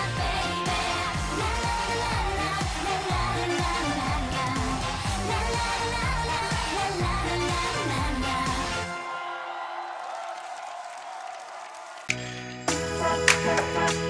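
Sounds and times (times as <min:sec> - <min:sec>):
electronic beat with kick drum: 0:00.0 - 0:08.9
dance-pop song with singing: 0:00.0 - 0:10.9, 0:12.1 - 0:14.0.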